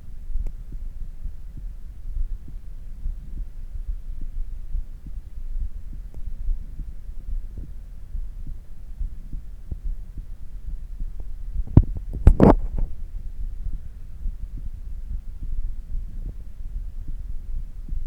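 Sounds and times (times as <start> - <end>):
heartbeat thuds: 0.0 - 18.0
microphone handling rustle: 11.0 - 16.4.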